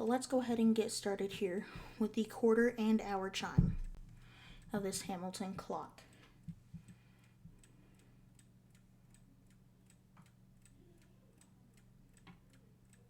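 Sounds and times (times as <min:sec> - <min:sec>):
low steady hum: 0:00.0 - 0:13.0
clock ticking faintly: 0:03.4 - 0:13.0.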